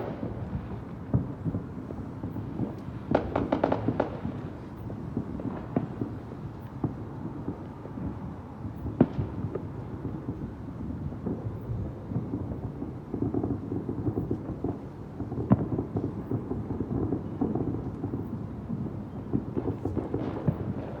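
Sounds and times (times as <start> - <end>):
distant fireworks rumble: 0.0 - 21.0
sharp firework bangs: 2.2 - 8.2.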